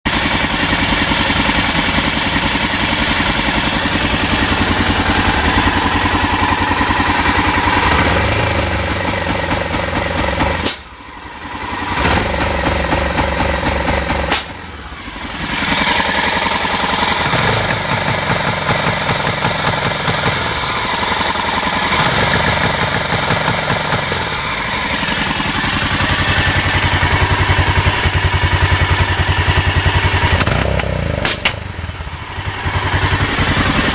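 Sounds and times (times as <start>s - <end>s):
motorcycle engine running: 0.1s - 33.9s.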